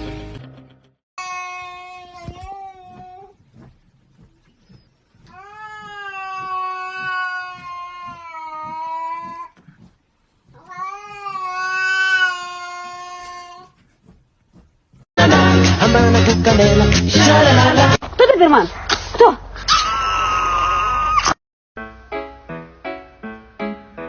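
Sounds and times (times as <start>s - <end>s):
cat yowling: 5.3s - 9.6s, 10.6s - 13.8s.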